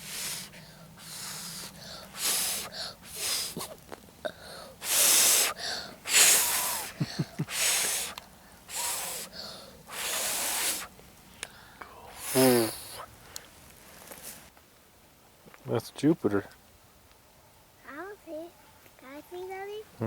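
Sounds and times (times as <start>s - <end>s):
person breathing heavily: 0.0s - 14.2s.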